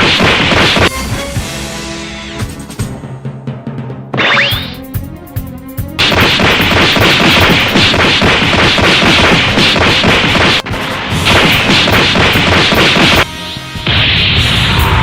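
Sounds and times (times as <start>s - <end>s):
punch impact sound effects: 0.0s - 1.1s, 6.0s - 15.0s.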